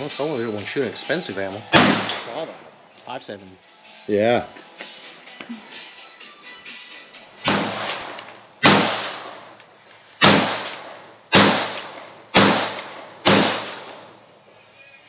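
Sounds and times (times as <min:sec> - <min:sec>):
pistol shots with echo: 0:01.6 - 0:02.7, 0:07.4 - 0:09.6, 0:10.2 - 0:14.2.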